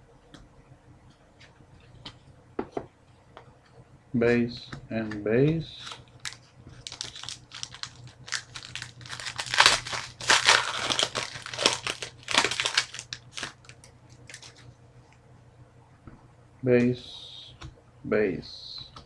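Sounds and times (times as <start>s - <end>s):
foil wrapper crinkling: 5.8s - 14.7s.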